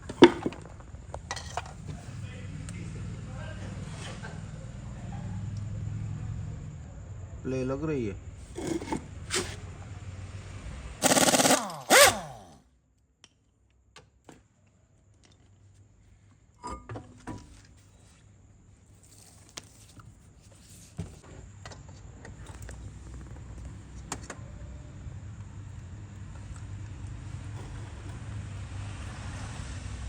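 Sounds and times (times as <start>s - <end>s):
car moving with low rumble: 22.4s - 30.0s.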